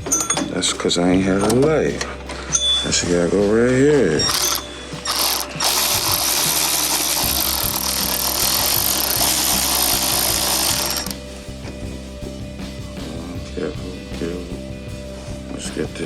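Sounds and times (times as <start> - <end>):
power tool on a socket: 4.3 - 11.2.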